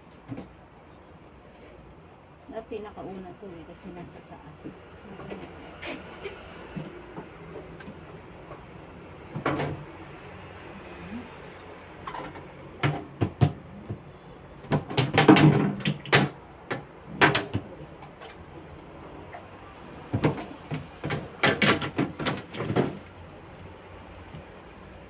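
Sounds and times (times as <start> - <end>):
containers knocking and clattering: 12.1 - 18.2, 20.1 - 23.1.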